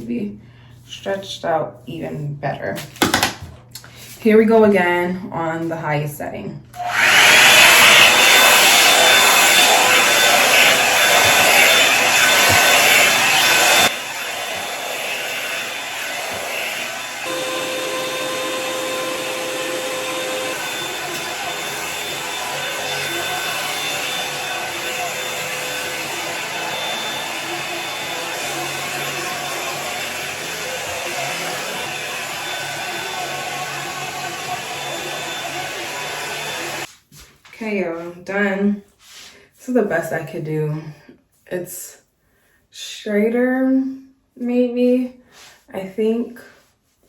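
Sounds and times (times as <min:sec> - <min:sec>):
hair dryer blowing: 0:06.8 - 0:36.9.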